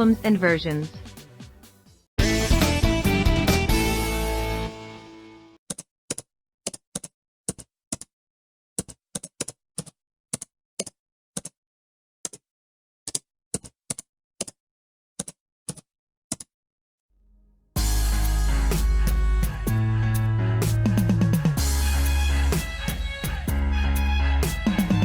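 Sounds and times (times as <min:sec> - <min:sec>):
background music: 0:00.0 - 0:05.6, 0:17.8 - 0:25.0.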